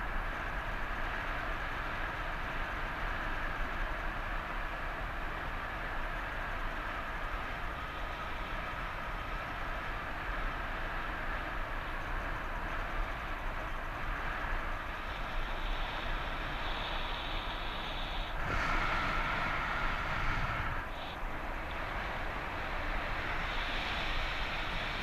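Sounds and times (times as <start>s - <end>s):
wind buffeting microphone: 13.4s - 25.0s.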